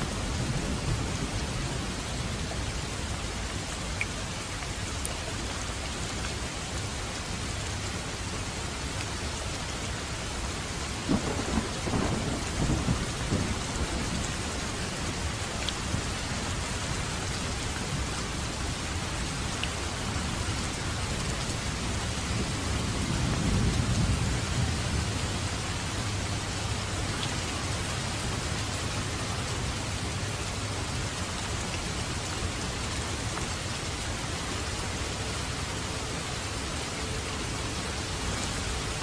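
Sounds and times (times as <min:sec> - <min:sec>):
heavy rain hissing: 0:00.0 - 0:39.0
thunder: 0:11.1 - 0:14.3, 0:22.3 - 0:25.2.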